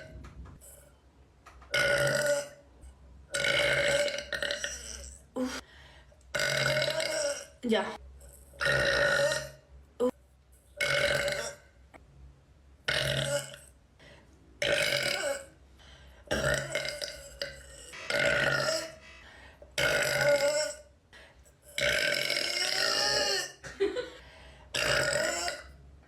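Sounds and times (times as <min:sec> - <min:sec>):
woman belching loudly: 0:01.8 - 0:02.6, 0:03.4 - 0:05.6, 0:06.4 - 0:07.9, 0:08.6 - 0:09.6, 0:10.8 - 0:11.6, 0:12.9 - 0:13.7, 0:14.6 - 0:15.5, 0:16.3 - 0:19.0, 0:19.8 - 0:20.8, 0:21.8 - 0:24.0, 0:24.8 - 0:25.7.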